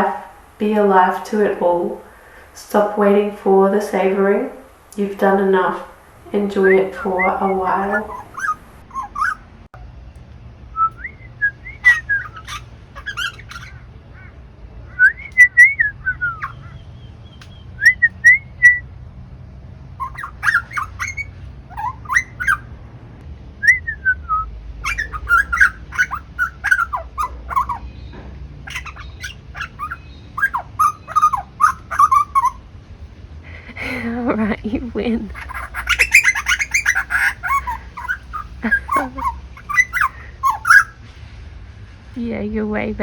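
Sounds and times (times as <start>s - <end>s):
bird singing: 6.6s - 9.7s, 10.8s - 18.9s, 20.0s - 22.7s, 24.8s - 32.6s, 34.6s - 41.0s.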